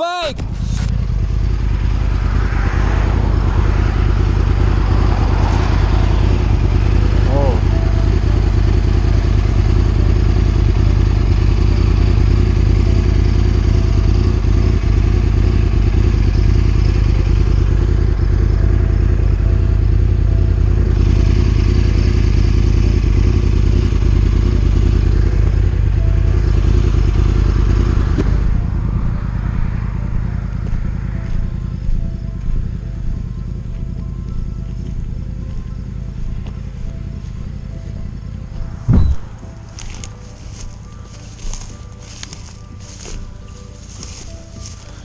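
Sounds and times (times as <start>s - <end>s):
heavy low rumble: 0.0s - 11.7s, 25.8s - 34.0s, 34.9s - 41.2s
motorcycle engine running: 0.3s - 45.0s.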